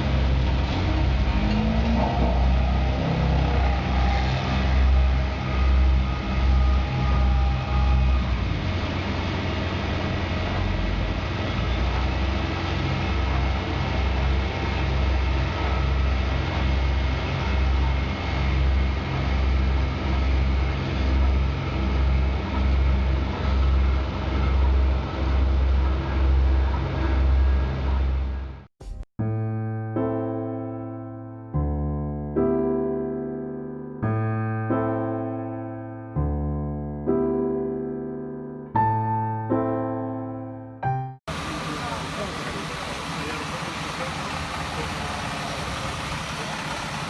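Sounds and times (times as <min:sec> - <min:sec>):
throbbing engine drone: 0:00.0 - 0:29.0, 0:41.3 - 0:47.0.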